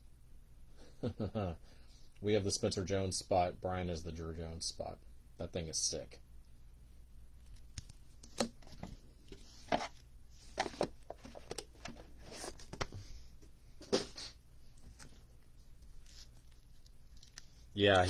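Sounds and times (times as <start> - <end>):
cards clicking and rustling: 7.4 - 13.1, 14.8 - 18.0.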